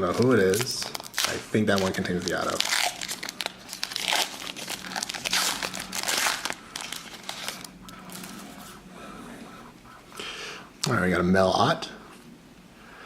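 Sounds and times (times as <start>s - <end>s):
plastic wrapper tearing and crinkling: 0.0s - 8.4s.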